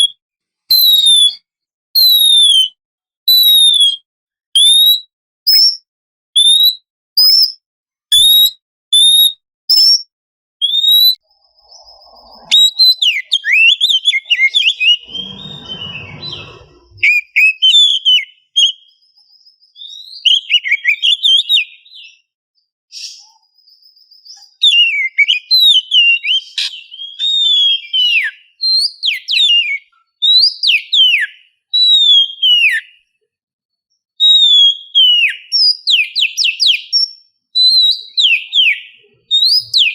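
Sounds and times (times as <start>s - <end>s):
bird singing: 10.6s - 17.2s
low rustle: 15.0s - 17.0s.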